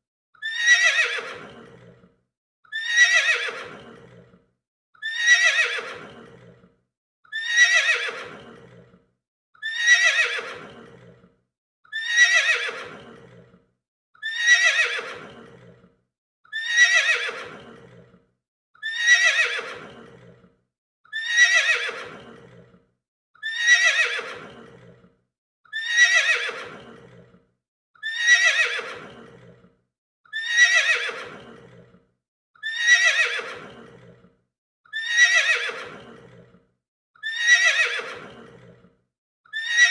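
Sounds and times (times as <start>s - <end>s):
horse whinnying: 0.4s - 2.0s, 2.7s - 4.3s, 5.0s - 6.6s, 7.3s - 8.9s, 9.6s - 11.2s, 11.9s - 13.5s, 14.2s - 15.8s, 16.5s - 18.1s, 18.8s - 20.4s, 21.1s - 22.7s, 23.4s - 25.0s, 25.7s - 27.3s, 28.0s - 29.6s, 30.3s - 31.9s, 32.6s - 34.2s, 34.9s - 36.5s, 37.2s - 38.7s, 39.5s - 39.9s.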